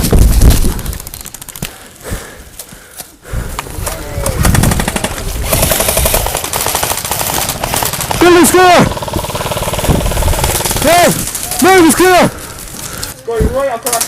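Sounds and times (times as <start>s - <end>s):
airsoft guns firing rapidly: 4.3s - 12.3s.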